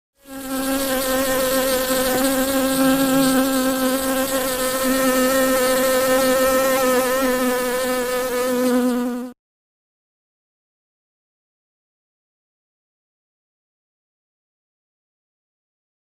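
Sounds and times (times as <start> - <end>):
honeybee buzzing: 0.2 - 9.4.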